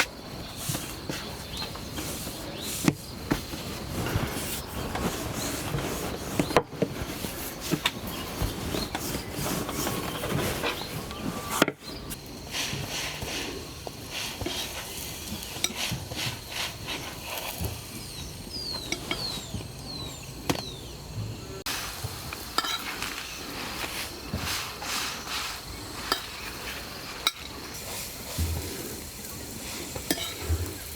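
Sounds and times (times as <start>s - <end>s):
pots and plates clinking: 18.7s - 19.5s, 22.4s - 24.5s, 25.5s - 29.0s, 29.9s - 30.9s.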